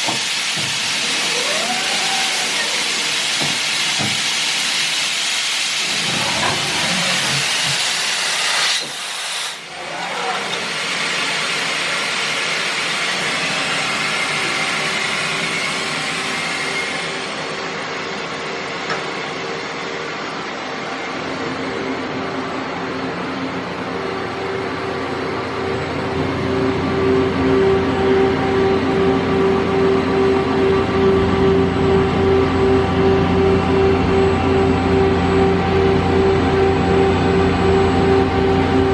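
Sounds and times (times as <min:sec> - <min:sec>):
machining center hissing: 0:00.0 - 0:09.7.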